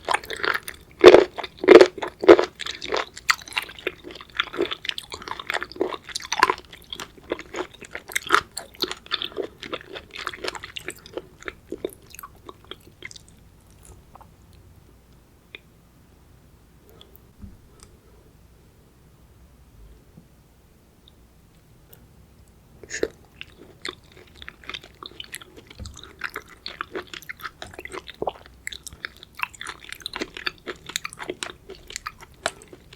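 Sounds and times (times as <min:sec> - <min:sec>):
crunchy chewing: 0:00.0 - 0:14.3, 0:22.8 - 0:32.9.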